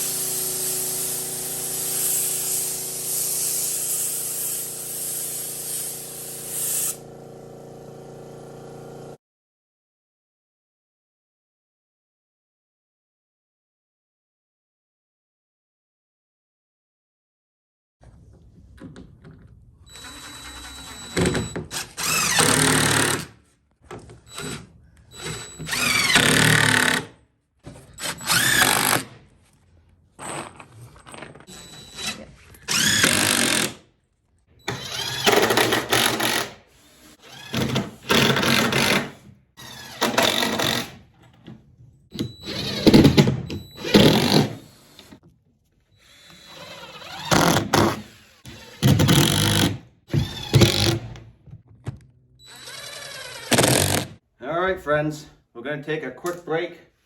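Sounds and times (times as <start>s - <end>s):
power drill running in bursts: 0.0s - 9.2s, 19.9s - 23.3s, 24.3s - 27.1s, 28.0s - 29.2s, 31.5s - 33.8s, 34.6s - 41.0s, 42.3s - 45.1s, 46.0s - 51.1s, 52.4s - 54.1s.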